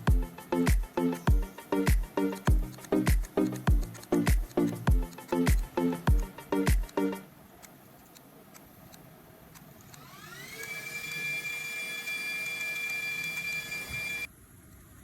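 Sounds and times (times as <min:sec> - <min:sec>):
faint clicks: 0:01.9 - 0:10.8
small electric motor whining: 0:09.8 - 0:14.3.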